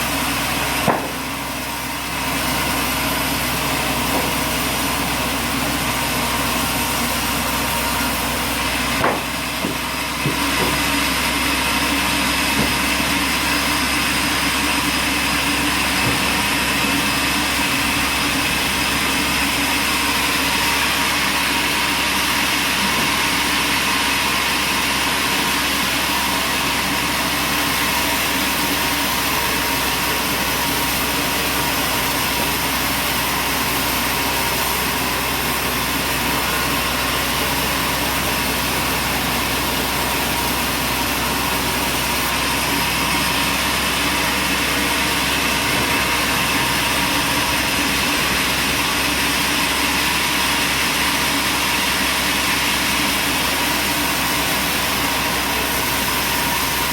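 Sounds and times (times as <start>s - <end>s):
machinery drone and whine: 0.0s - 56.9s
short knock: 0.8s - 1.2s.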